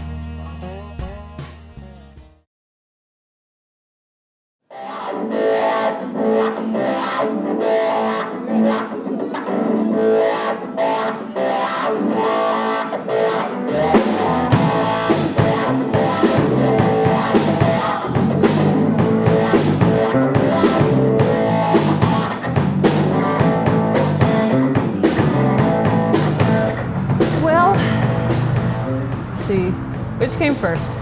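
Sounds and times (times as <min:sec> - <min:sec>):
bass line: 0:00.0 - 0:02.4, 0:13.6 - 0:31.0
guitar instrumental music: 0:04.7 - 0:31.0.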